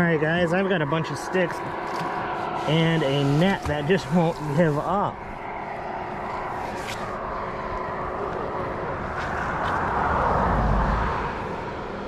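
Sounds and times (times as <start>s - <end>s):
passing vehicle rumbling: 5.4s - 12.0s.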